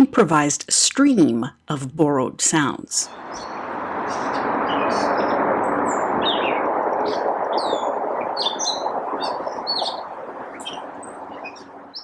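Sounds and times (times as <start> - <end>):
steady rushing background noise: 3.1 - 12.0.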